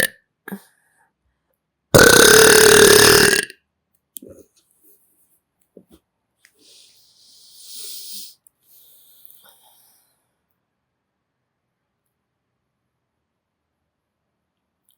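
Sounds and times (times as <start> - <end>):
person belching loudly: 2.0 - 3.5.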